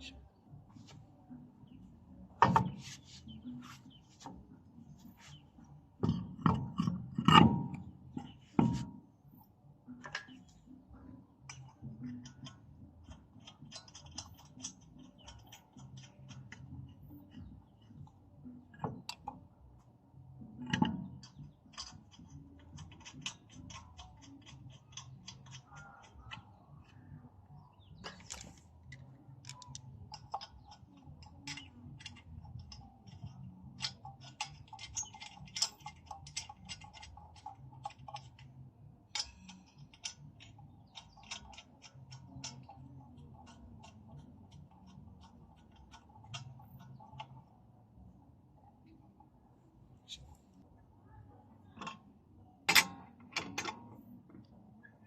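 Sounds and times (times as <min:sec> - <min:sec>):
ratchet wrench clicking: 0:11.5 - 0:16.7, 0:28.3 - 0:38.5.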